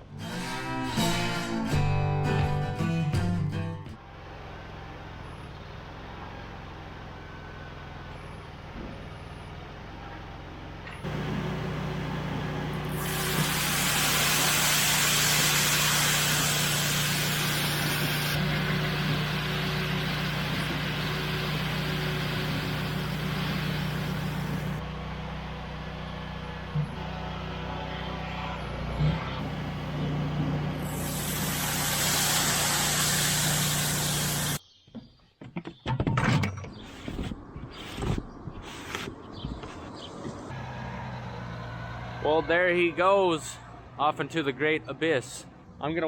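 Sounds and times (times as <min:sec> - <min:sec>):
farm machinery engine running: 0:11.0 - 0:34.6
loud hiss: 0:12.9 - 0:18.4, 0:30.8 - 0:34.6.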